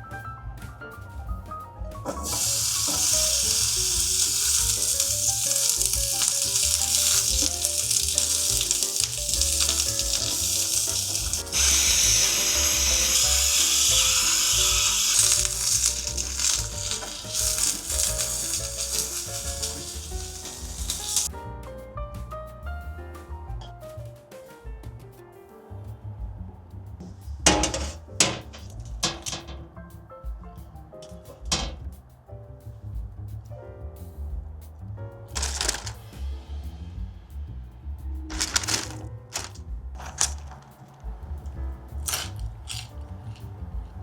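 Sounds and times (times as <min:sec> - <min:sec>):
food sizzling as it fries: 0:02.1 - 0:21.3, 0:35.3 - 0:36.2, 0:38.3 - 0:40.9, 0:41.9 - 0:44.0.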